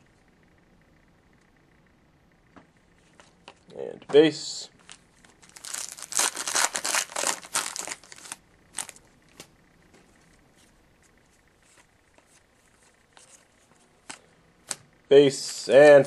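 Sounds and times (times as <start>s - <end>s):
foil wrapper tearing and crinkling: 5.4s - 9.0s.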